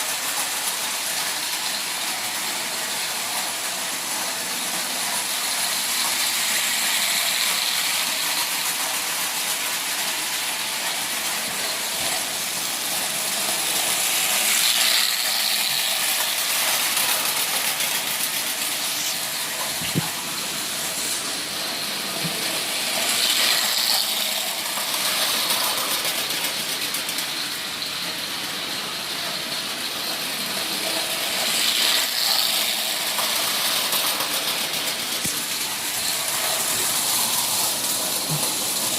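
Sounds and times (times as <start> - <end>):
toy train rolling on metal track: 0.0 - 38.9.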